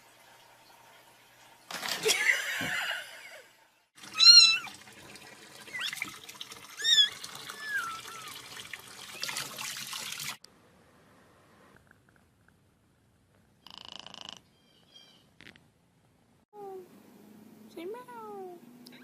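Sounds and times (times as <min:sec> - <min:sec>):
cat meowing: 0:04.1 - 0:04.7.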